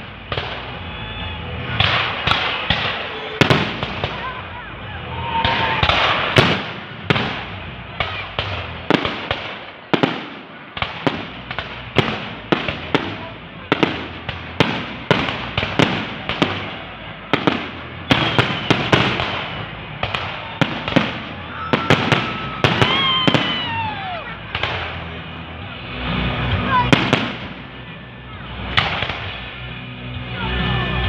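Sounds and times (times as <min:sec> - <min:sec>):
fireworks crackling: 0:00.0 - 0:29.6
thin whistling tone: 0:00.9 - 0:06.8
fireworks banging: 0:01.4 - 0:27.9.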